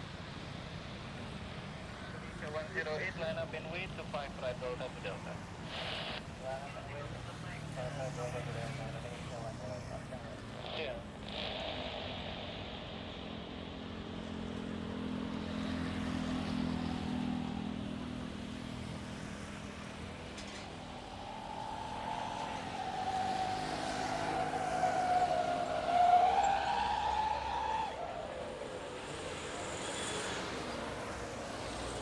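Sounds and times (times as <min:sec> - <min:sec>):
jet engine whine: 0:00.0 - 0:32.0.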